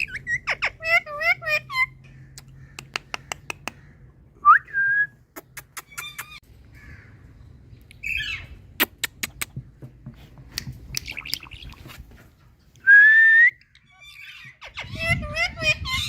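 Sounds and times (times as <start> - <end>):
parrot clicks and chirps: 5.4 - 6.4.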